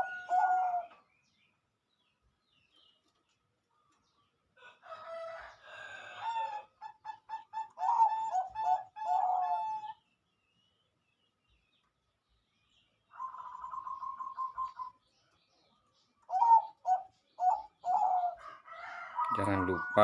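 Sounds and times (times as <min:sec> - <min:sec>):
dove cooing: 0:00.0 - 0:01.0, 0:06.0 - 0:10.0, 0:13.1 - 0:15.0, 0:16.3 - 0:20.0.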